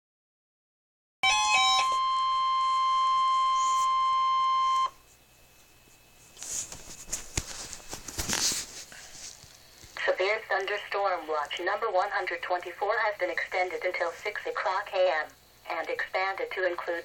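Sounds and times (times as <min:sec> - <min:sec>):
loud steady alert tone: 0:01.2 - 0:04.9
stepping electronic tones: 0:01.2 - 0:05.0
faint radio hiss with crackles: 0:01.6 - 0:17.0.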